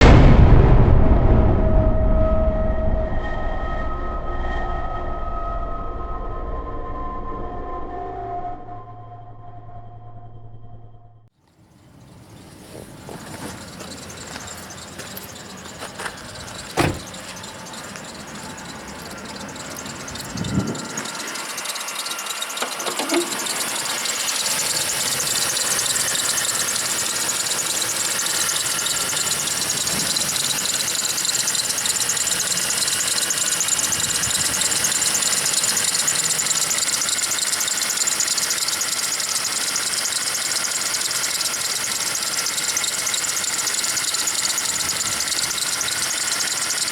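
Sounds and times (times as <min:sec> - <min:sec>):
car engine running: 0:11.4 - 0:46.9
squealing drive belt: 0:11.4 - 0:46.9
sharp knocks: 0:15.8 - 0:17.5.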